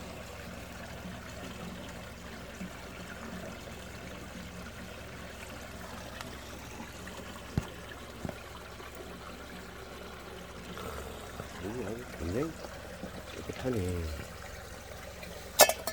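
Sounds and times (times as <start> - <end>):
spring water trickling: 0.0 - 15.9.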